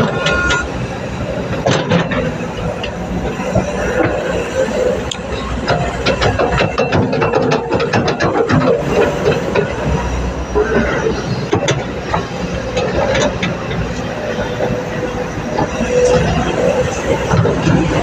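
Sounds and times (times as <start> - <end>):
excavator machine rumble: 0.0 - 18.0
sharp metallic clicks and knocks: 5.0 - 9.8.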